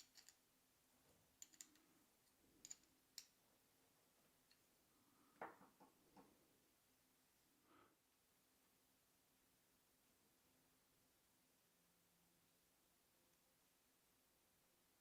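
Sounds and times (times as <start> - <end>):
small metal clicks of tools: 0.0 - 0.4, 1.4 - 3.4.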